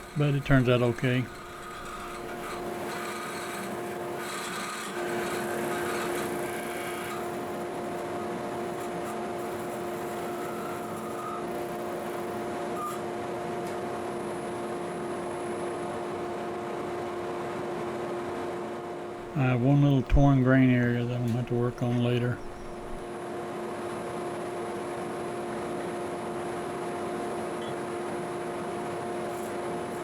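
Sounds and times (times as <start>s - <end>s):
tool cutting spinning wood: 0.0s - 7.6s
wood lathe motor hum: 0.0s - 12.5s.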